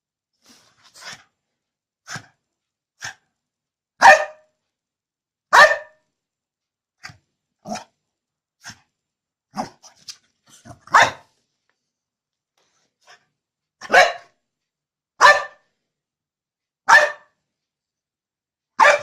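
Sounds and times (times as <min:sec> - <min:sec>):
dog barking: 0:04.0 - 0:04.5, 0:05.5 - 0:06.0, 0:10.7 - 0:11.3, 0:13.8 - 0:14.4, 0:15.2 - 0:15.6, 0:16.8 - 0:17.4, 0:18.8 - 0:19.0.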